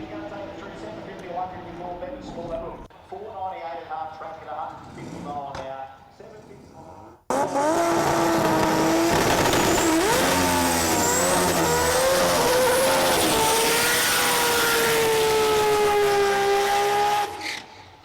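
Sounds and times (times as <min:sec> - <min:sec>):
car engine revving: 0:07.3 - 0:17.7.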